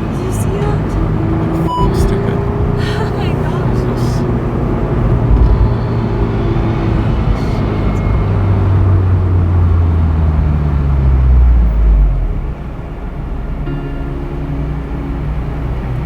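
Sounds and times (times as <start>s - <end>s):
car engine droning while driving: 0.0s - 16.0s.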